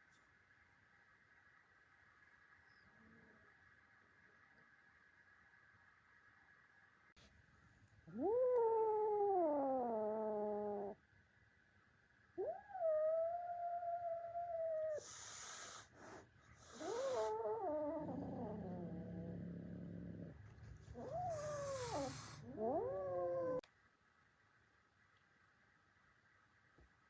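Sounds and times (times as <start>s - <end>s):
cat growling: 8.0s - 11.0s, 12.4s - 23.6s
cats yowling: 8.1s - 11.0s, 12.4s - 15.9s, 16.6s - 23.6s
cat hissing: 14.9s - 23.6s.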